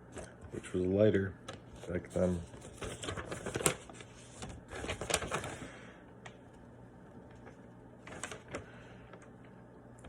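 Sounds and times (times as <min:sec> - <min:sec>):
paper rustling and crinkling: 0:00.1 - 0:05.9, 0:07.3 - 0:09.3.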